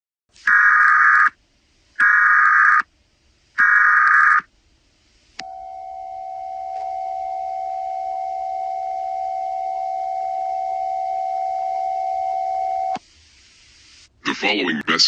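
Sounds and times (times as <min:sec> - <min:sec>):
buzzing digital data tones: 0:03.6 - 0:04.5.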